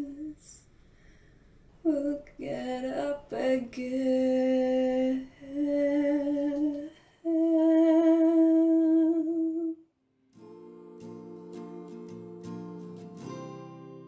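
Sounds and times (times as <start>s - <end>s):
acoustic guitar strumming: 10.4s - 14.0s.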